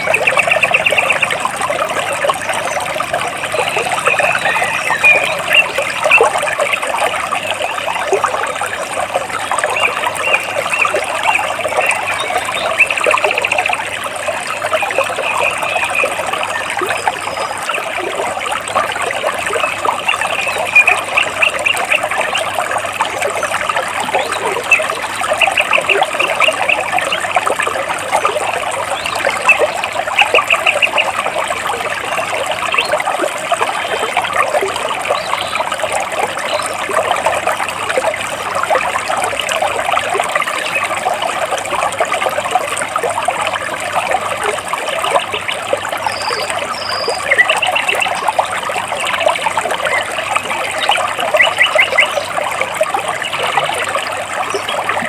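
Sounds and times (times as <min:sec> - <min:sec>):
stream trickling over rocks: 0:00.0 - 0:55.0
bird trilling: 0:50.9 - 0:52.2.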